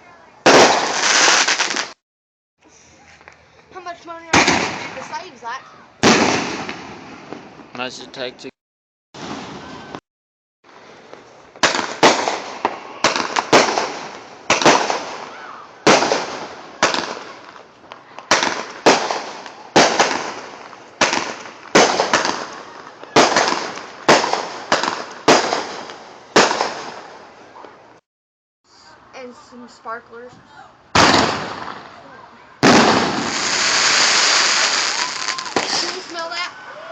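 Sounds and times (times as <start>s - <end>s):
fireworks bangs with crackle: 0.4s - 2.0s, 4.3s - 5.4s, 6.0s - 8.0s, 9.2s - 10.0s, 10.7s - 27.3s, 30.9s - 32.0s, 32.6s - 36.5s.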